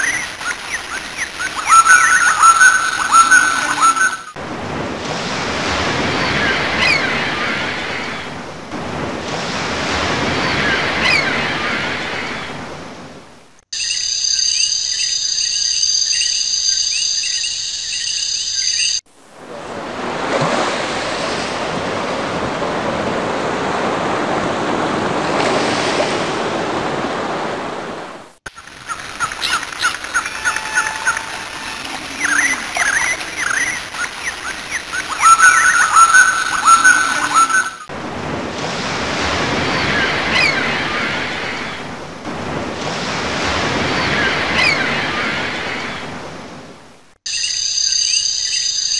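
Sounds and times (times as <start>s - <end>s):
birds chirping: 0.0s - 4.4s, 28.6s - 37.9s
surf washing in: 0.0s - 13.6s, 19.1s - 47.2s.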